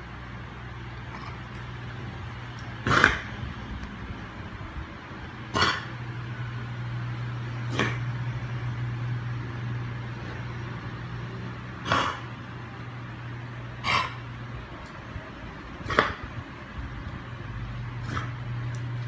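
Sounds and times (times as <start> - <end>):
steady low hum: 0.0 - 19.0
dog coughing: 2.8 - 3.3, 5.5 - 6.0, 7.7 - 8.1, 11.8 - 12.3, 13.8 - 14.2, 15.8 - 16.3, 18.0 - 18.4.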